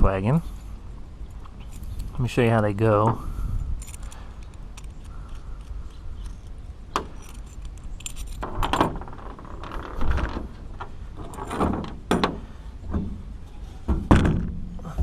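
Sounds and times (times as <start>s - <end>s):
metal parts clinking and clattering: 3.8s - 5.4s, 7.1s - 12.0s.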